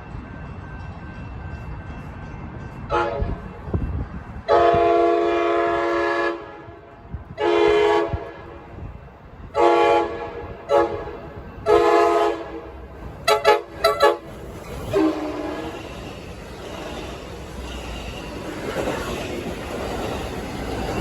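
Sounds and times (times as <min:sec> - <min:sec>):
low rumble of passing train: 0:00.0 - 0:21.0
locomotive air horn blasts: 0:04.5 - 0:08.5, 0:09.6 - 0:14.3, 0:14.9 - 0:15.8.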